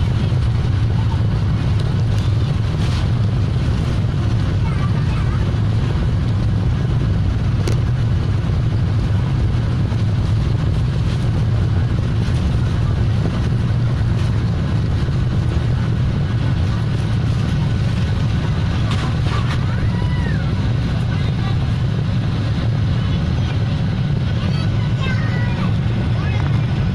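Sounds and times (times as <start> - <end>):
airliner engines rumbling: 0.0 - 26.9.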